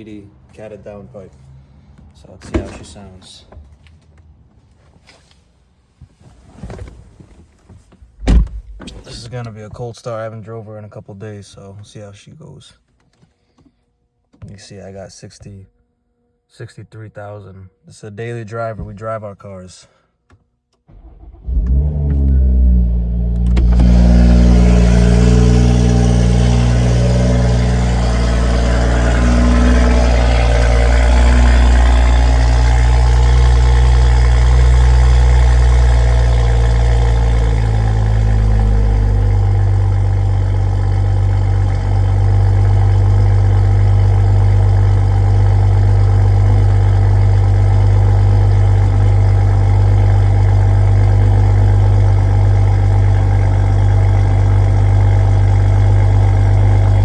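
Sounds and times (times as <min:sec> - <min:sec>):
car engine starting and idling: 0:20.8 - 0:57.0.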